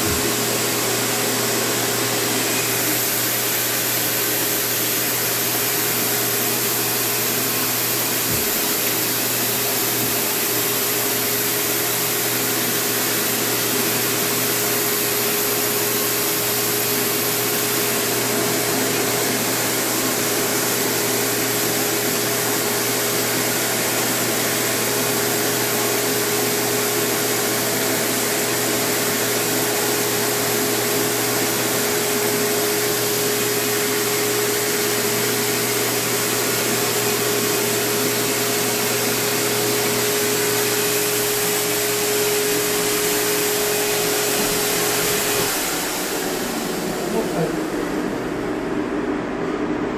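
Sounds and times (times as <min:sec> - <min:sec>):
blower motor whooshing hum: 0:00.0 - 0:49.9.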